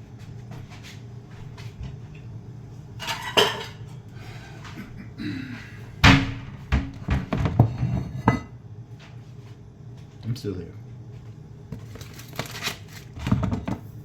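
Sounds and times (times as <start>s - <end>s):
cookware clattering: 3.0s - 3.9s.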